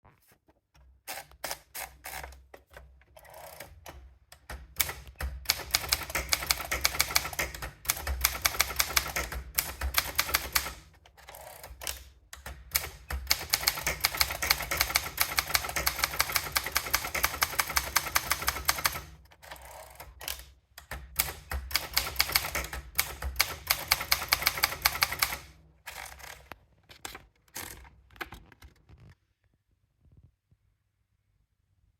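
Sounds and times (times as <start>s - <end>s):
typewriter key strikes: 4.5s - 10.8s, 20.8s - 25.4s.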